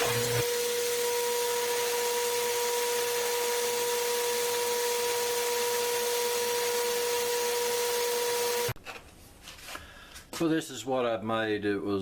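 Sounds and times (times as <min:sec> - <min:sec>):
power tool cutting metal: 0:00.0 - 0:08.8.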